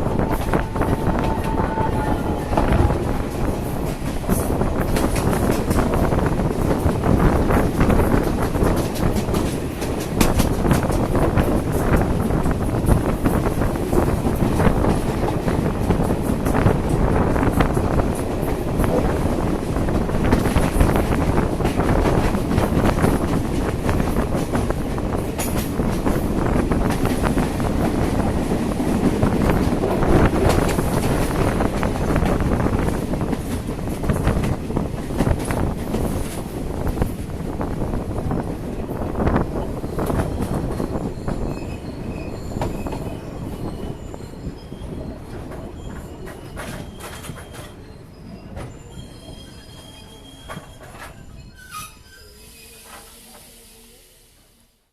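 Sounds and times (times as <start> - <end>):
wind buffeting microphone: 0.0 - 49.7
train rumble: 0.0 - 54.6
wheel squeal: 40.2 - 53.5.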